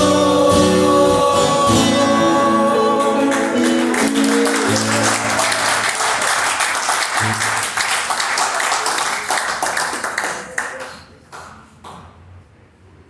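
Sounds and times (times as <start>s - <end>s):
congregation applauding: 2.7s - 12.0s.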